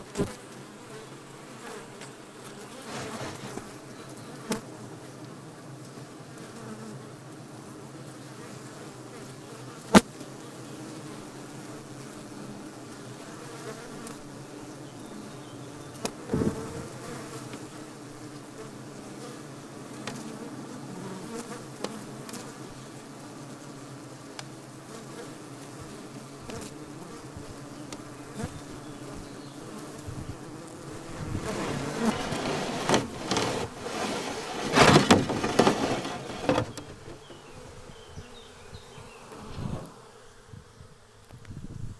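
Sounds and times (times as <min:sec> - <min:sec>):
bees buzzing in a hive: 0:00.0 - 0:41.3
knocks and bumps on a hive: 0:31.1 - 0:37.6.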